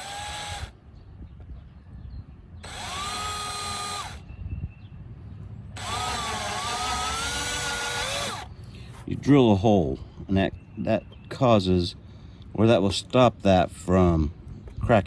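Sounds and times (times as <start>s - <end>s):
electric drill whining: 0.0s - 0.7s, 2.6s - 4.2s, 5.8s - 8.5s.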